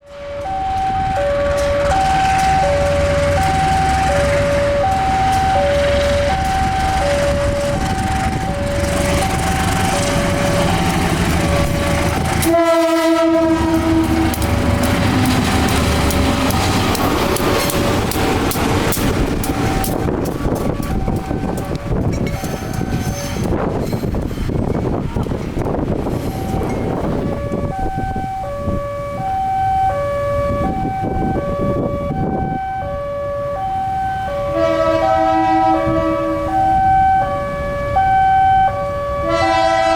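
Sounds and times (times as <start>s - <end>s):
two-tone warning alarm: 0.0s - 23.6s, 24.7s - 39.9s
locomotive horn blast: 11.5s - 15.7s, 34.3s - 37.6s, 38.4s - 39.9s.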